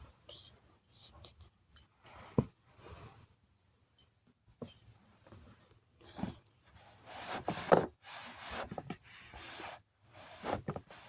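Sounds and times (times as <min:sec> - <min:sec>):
toy figures rubbing and scraping: 0:06.8 - 0:11.0.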